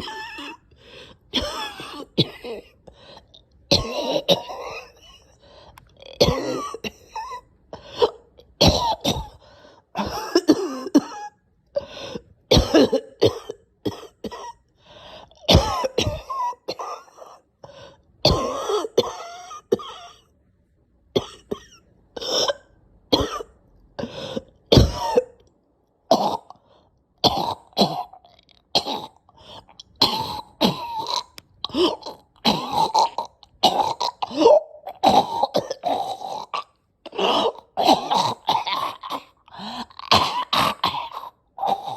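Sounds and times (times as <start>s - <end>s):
person coughing: 0.0s - 0.7s, 1.3s - 2.8s, 3.7s - 5.4s, 6.1s - 9.4s, 10.0s - 11.4s, 12.5s - 14.6s, 15.4s - 17.4s, 18.2s - 20.2s, 21.2s - 25.4s, 28.8s - 29.2s, 30.0s - 41.9s.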